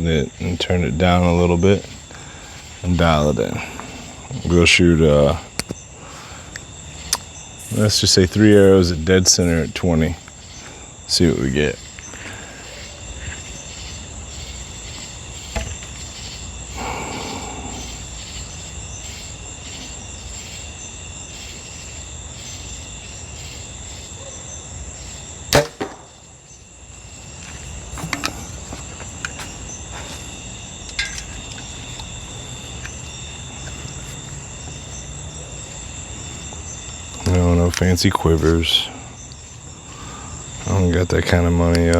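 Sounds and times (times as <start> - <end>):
insects chirping: 0.0 - 41.9
arrow hitting target: 25.5 - 26.2.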